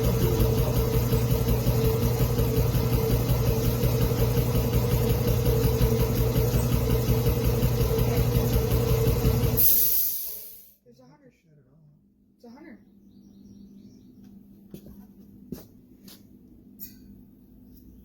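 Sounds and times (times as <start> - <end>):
air compressor running: 0.0 - 10.8.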